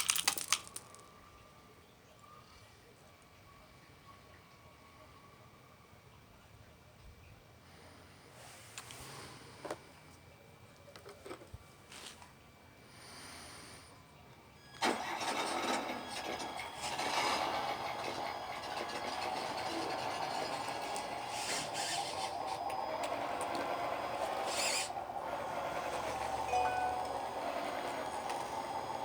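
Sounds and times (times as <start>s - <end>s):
model machine engine drone: 14.6s - 29.0s.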